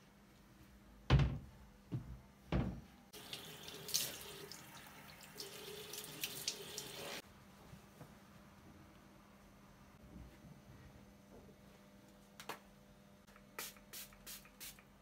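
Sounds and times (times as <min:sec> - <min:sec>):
water running into a sink: 0:03.2 - 0:07.2.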